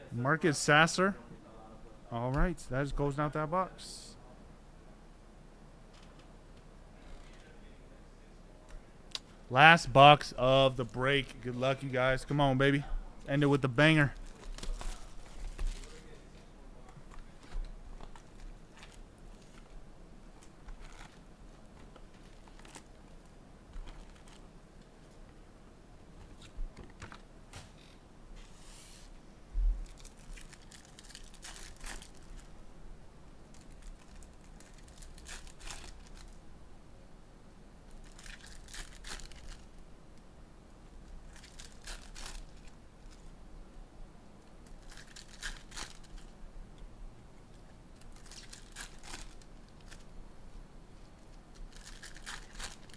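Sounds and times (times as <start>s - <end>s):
foil wrappers crinkling and tearing: 14.2s - 16.3s, 23.7s - 24.5s, 29.8s - 32.5s, 33.5s - 36.4s, 37.9s - 39.8s, 41.2s - 43.2s, 44.6s - 46.3s, 48.0s - 50.1s, 51.5s - 52.9s.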